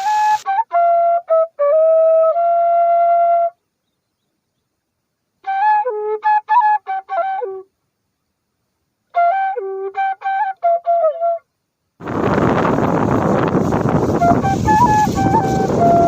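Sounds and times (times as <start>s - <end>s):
flute-like melody: 0.0s - 3.6s, 5.4s - 7.7s, 9.1s - 16.0s
loud steady rushing noise: 12.0s - 16.0s.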